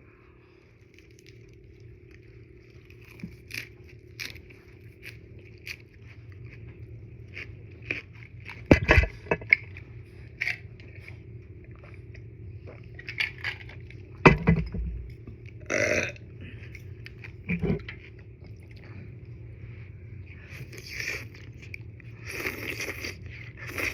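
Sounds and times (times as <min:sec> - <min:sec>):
loud deep burps: 0:15.6 - 0:16.2.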